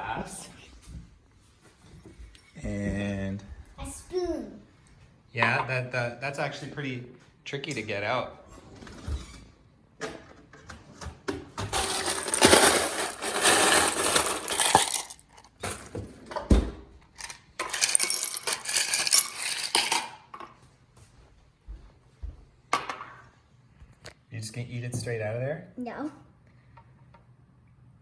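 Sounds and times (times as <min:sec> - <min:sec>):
glass and shell clinking: 0:17.6 - 0:20.2.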